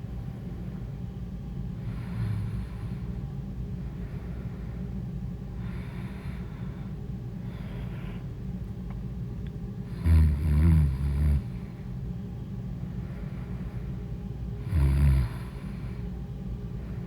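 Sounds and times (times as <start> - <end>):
person breathing in sleep: 1.8 - 3.1, 3.8 - 8.3, 14.6 - 16.1
loud low-pitched snore: 10.0 - 11.5, 14.6 - 15.6.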